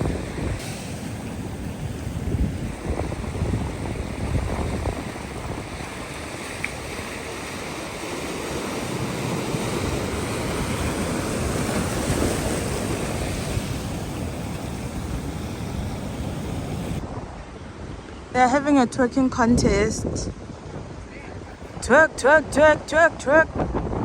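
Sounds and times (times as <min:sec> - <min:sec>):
ocean surf washing onto beach: 0:00.0 - 0:18.6
wind rumbling on microphone: 0:00.0 - 0:24.0.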